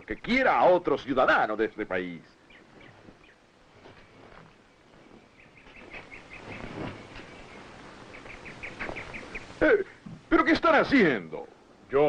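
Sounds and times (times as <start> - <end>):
faint outdoor background noise: 0.0 - 12.0
small bird chirping: 1.9 - 10.3.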